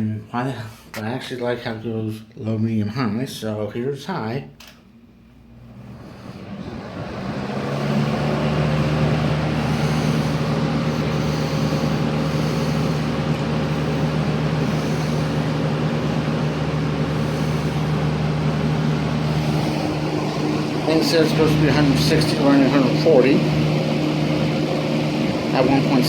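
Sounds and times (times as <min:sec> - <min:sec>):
fan air rushing: 0:04.6 - 0:26.0
low motor hum: 0:05.5 - 0:26.0.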